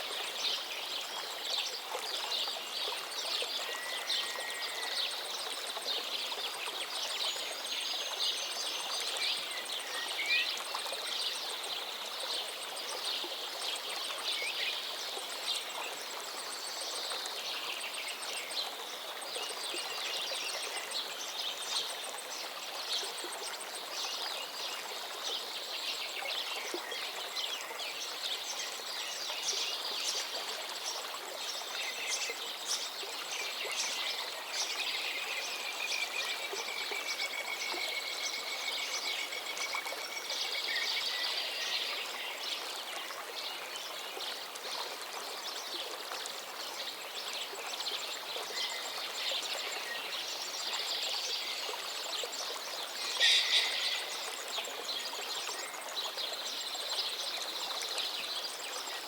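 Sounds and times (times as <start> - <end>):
river flowing: 0.0 - 59.0
small birds chirping: 52.9 - 55.8.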